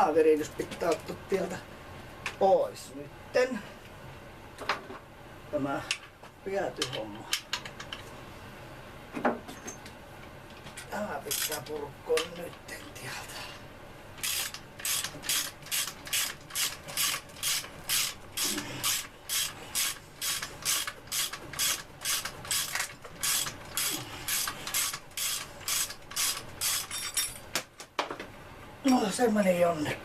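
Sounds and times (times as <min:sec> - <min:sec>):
hand ratchet rasping: 0:14.2 - 0:27.0.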